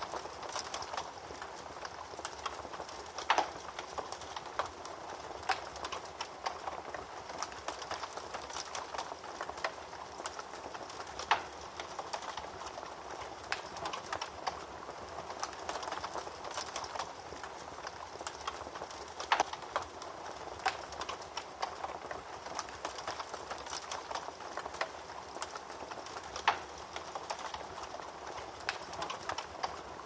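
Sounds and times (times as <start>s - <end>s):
fire crackling and popping: 0.0s - 30.0s.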